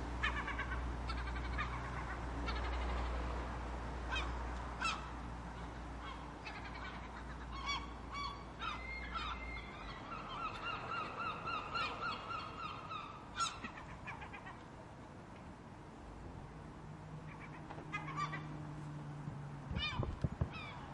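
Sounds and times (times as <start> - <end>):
gulls calling: 0.0 - 3.4, 4.1 - 14.6, 17.3 - 18.5.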